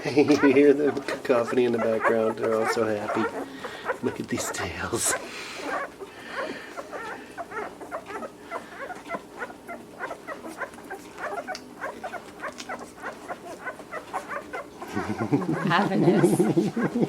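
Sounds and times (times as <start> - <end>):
puppies squeaking and whimpering: 0.0 - 17.0.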